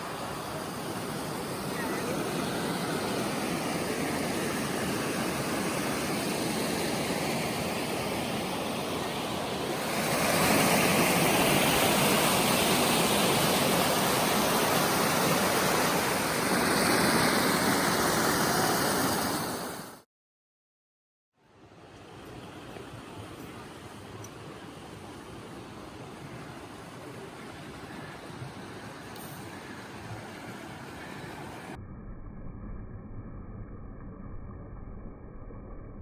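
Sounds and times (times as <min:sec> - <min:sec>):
waterfall rushing into pool: 0:00.0 - 0:20.0.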